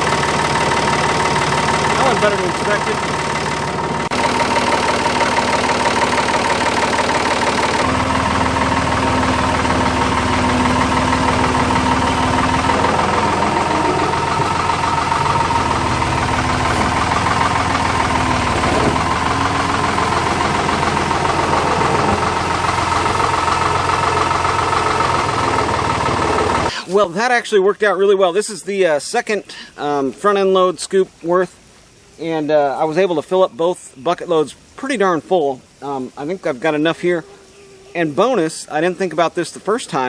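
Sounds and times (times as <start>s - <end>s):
backhoe engine running: 0.0s - 26.8s
loader scooping dirt: 0.0s - 26.8s.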